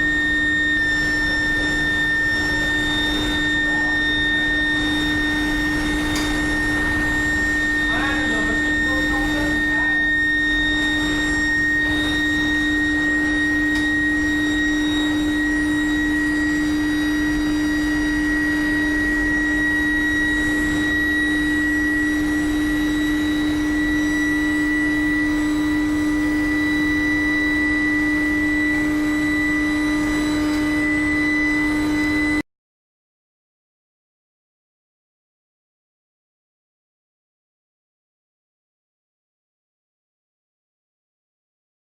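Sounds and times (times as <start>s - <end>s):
furnace low hum: 0.0s - 32.4s
high electrical whine: 0.0s - 32.4s.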